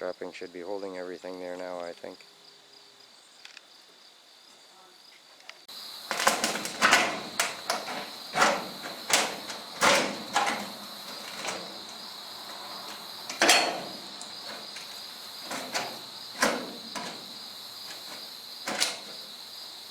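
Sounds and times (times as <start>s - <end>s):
crickets trilling: 0.0s - 19.9s
sharp knocks and clunks: 6.1s - 19.5s.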